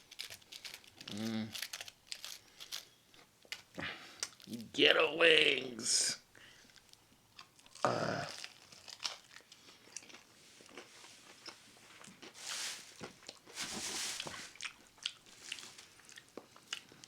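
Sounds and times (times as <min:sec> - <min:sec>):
person chewing crispy chicken: 0:00.0 - 0:04.5, 0:06.6 - 0:13.5, 0:14.2 - 0:17.0.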